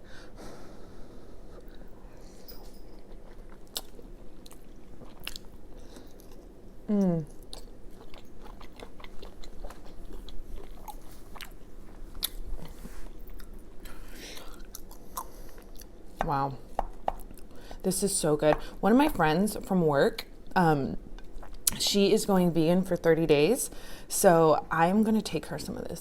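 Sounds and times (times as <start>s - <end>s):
woman chewing food: 0.8s - 17.7s, 21.1s - 21.8s.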